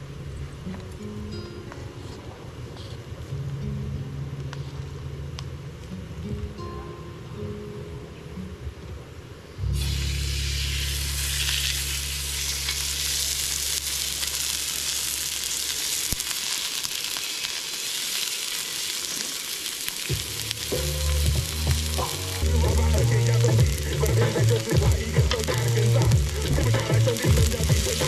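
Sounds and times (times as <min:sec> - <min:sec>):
low steady hum: 0:09.4 - 0:16.0
food sizzling in a hot pan: 0:09.7 - 0:28.0
background music: 0:20.1 - 0:28.0.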